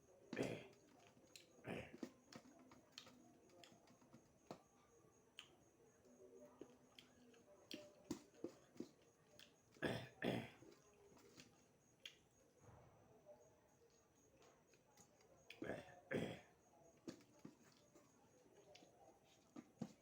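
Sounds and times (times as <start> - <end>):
breathy throat sounds: 0.3 - 2.5, 9.8 - 10.7, 15.5 - 16.5.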